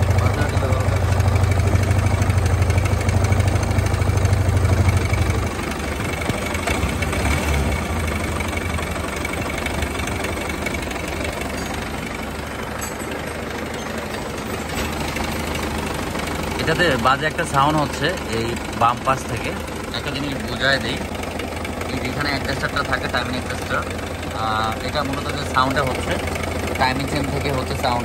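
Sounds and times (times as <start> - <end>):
engine clattering: 0.0 - 28.0
loud low hum: 0.0 - 28.0
motorcycle engine running: 0.0 - 28.0.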